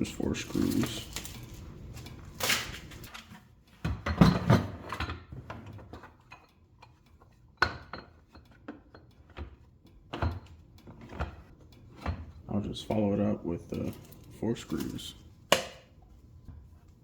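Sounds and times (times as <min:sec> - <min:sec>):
light clicks and clinks: 0:12.8 - 0:15.2.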